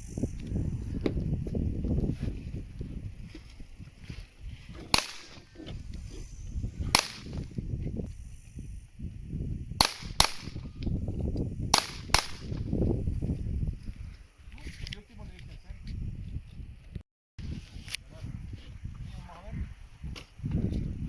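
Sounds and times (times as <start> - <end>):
pistol shots: 4.9 - 5.4, 7.0 - 7.4, 11.8 - 12.6.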